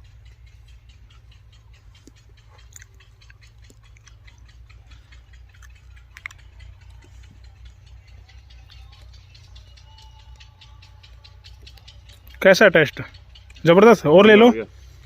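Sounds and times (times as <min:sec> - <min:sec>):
steady low hum: 0:00.0 - 0:15.0
person chewing crunchy food: 0:02.0 - 0:07.4.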